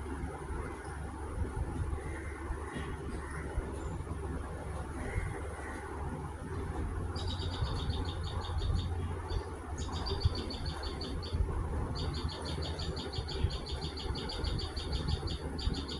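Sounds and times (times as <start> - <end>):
steady low rumble: 0.0 - 15.9
woodpecker rattling calls: 7.2 - 15.9.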